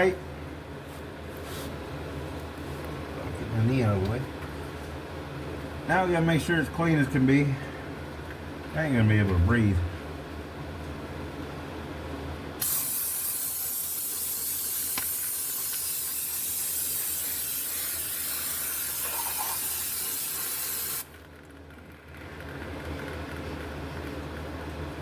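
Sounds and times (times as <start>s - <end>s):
aerosol can spraying hiss: 12.6s - 21.1s.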